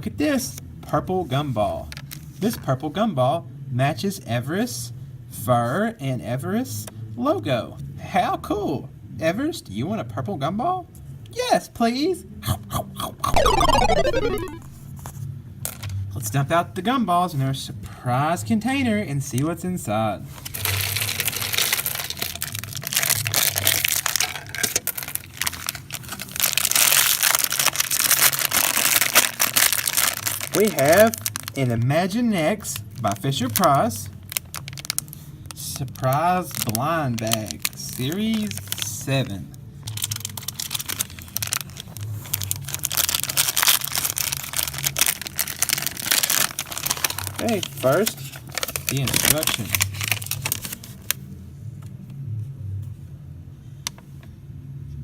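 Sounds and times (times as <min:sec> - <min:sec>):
plastic packaging crinkling: 0:20.5 - 0:31.7, 0:33.0 - 0:39.0, 0:39.8 - 0:51.2
gumballs rattling out of container: 0:20.6 - 0:31.6, 0:39.9 - 0:50.7.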